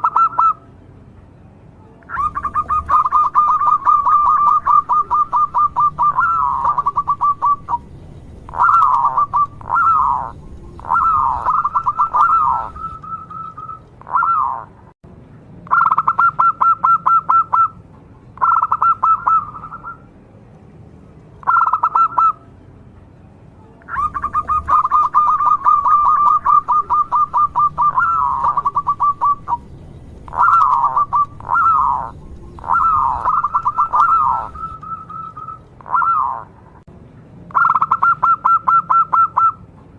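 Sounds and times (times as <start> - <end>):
dove cooing: 0.0 - 0.6, 2.1 - 14.7, 18.4 - 20.0, 21.4 - 22.4, 23.9 - 36.6, 37.6 - 39.6.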